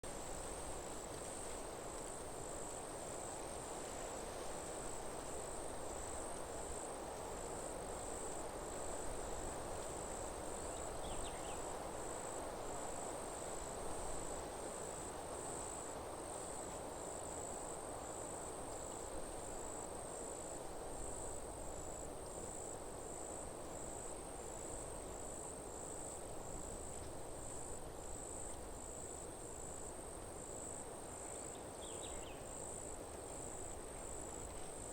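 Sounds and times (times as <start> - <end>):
insects chirping: 0.4 - 34.9.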